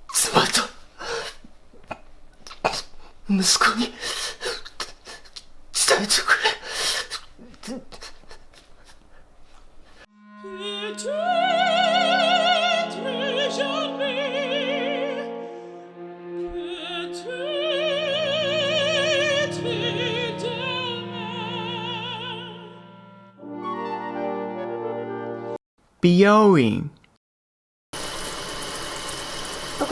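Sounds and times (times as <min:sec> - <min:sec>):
orchestral chords: 0:10.2 - 0:21.6
operatic singing with vibrato: 0:10.4 - 0:22.9.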